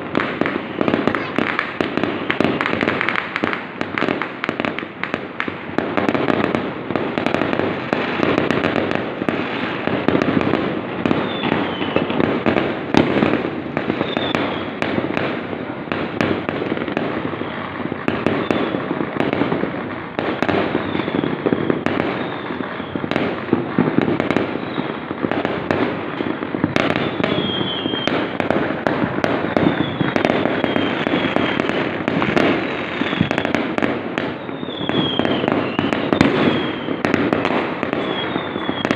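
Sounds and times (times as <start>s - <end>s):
fireworks crackling bangs: 0.0s - 38.9s
falling whistles: 11.2s - 12.2s, 14.0s - 14.7s, 20.8s - 23.0s, 27.0s - 28.1s, 29.4s - 31.6s, 34.4s - 37.0s, 38.0s - 38.9s.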